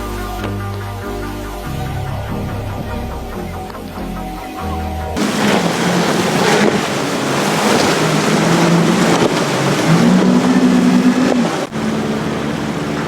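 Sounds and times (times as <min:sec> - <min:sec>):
low droning tone: 0:00.0 - 0:05.9
sea water crashing: 0:05.2 - 0:13.0
wind buffeting microphone: 0:05.2 - 0:13.0.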